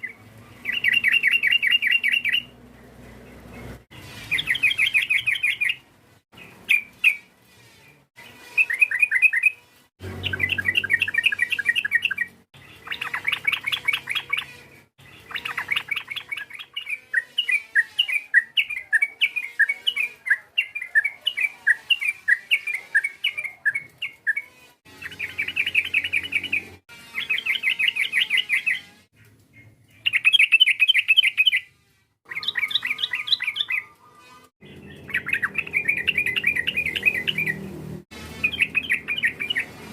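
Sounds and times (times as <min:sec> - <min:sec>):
bulbul singing chattering notes: 0:08.6 - 0:28.9, 0:32.3 - 0:34.0, 0:34.6 - 0:37.7, 0:38.3 - 0:39.8.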